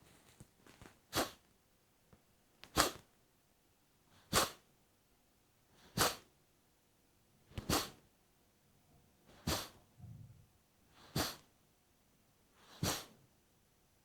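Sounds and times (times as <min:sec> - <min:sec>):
forceful exhalations through nose: 0:09.4 - 0:09.8, 0:12.7 - 0:13.2.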